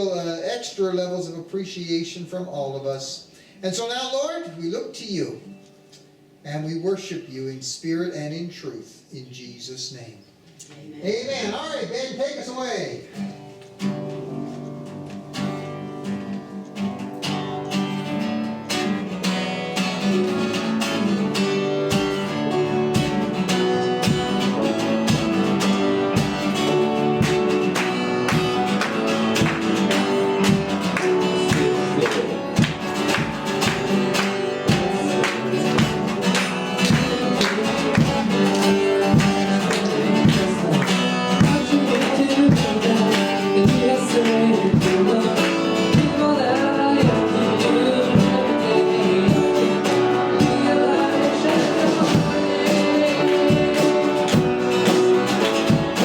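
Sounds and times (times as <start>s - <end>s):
guitar: 0.0s - 56.0s
worship band playing: 11.1s - 56.0s
steady drum beat: 21.4s - 56.0s.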